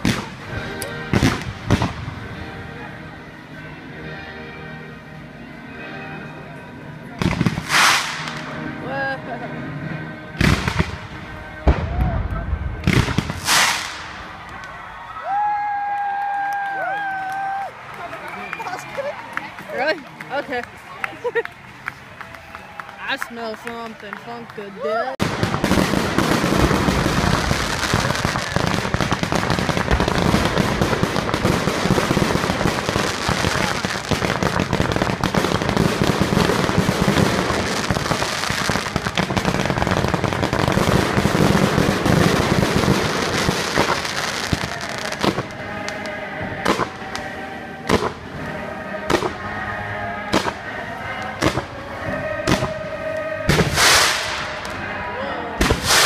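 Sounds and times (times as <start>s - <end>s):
fireworks bursts and crackle: 0.0s - 2.6s, 7.2s - 9.1s, 10.4s - 15.5s, 25.2s - 55.0s, 55.6s - 56.0s
music playing: 0.0s - 15.4s, 16.7s - 56.0s
sharp firework bangs: 7.2s - 8.4s, 12.8s - 14.2s, 53.5s - 54.7s, 55.6s - 56.0s.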